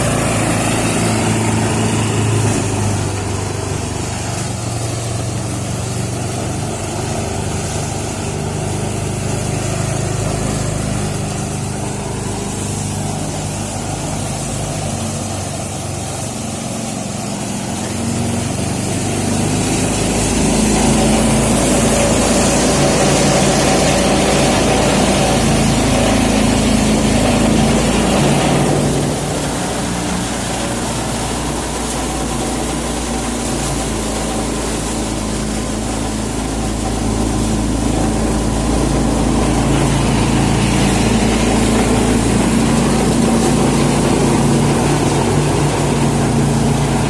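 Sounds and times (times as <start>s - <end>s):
small thresher engine running: 0.0s - 47.0s.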